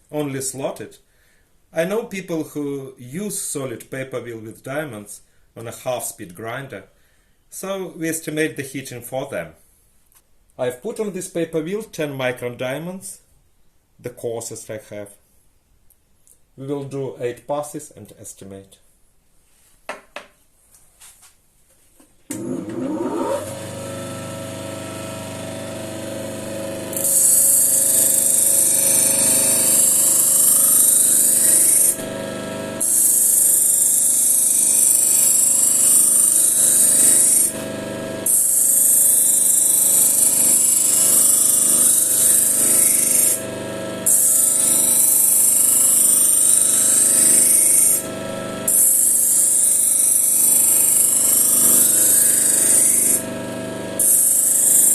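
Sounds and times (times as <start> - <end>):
grinder motor humming: 22.3 - 54.9.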